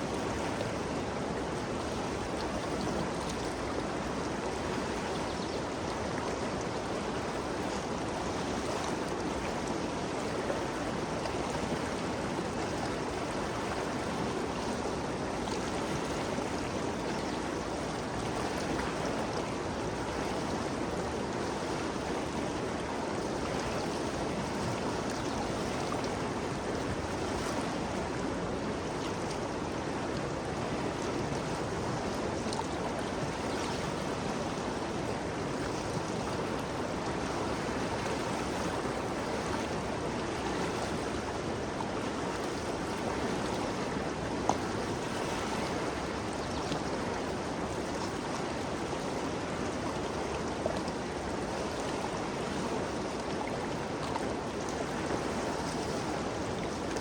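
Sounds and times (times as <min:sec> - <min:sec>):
river water rushing: 0:00.0 - 0:57.0.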